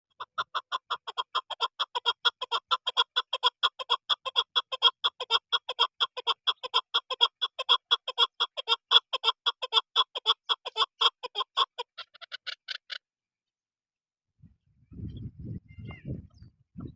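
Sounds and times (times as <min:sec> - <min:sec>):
partridge clucking call: 0:00.1 - 0:13.0.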